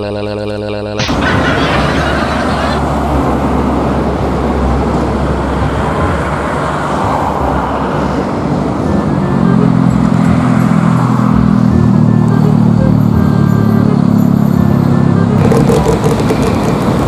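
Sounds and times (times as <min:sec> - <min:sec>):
heavy vehicle engine humming: 0:01.0 - 0:17.0
road traffic rushing past: 0:01.0 - 0:17.0.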